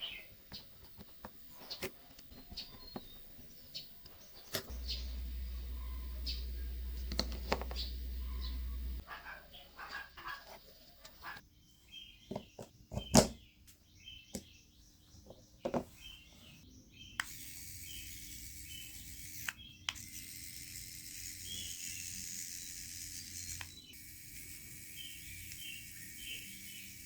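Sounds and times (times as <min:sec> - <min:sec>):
bird chirps: 0:00.0 - 0:17.2
steady high hiss: 0:04.6 - 0:09.0.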